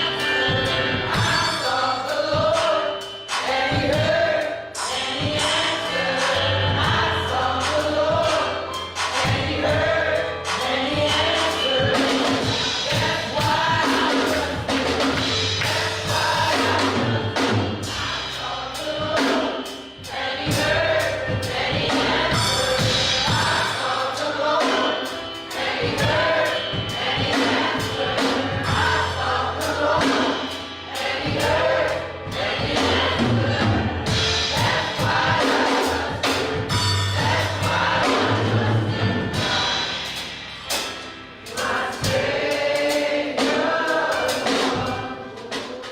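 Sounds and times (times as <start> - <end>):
bass: 0.0 - 45.9
drums beating: 0.0 - 45.9
gospel choir singing: 0.0 - 45.9.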